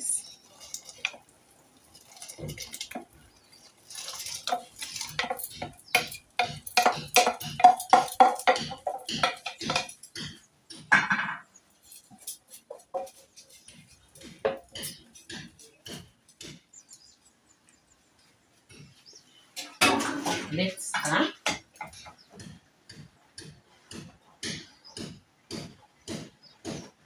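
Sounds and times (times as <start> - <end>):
spoon scraping metal pot: 2.0 - 10.2.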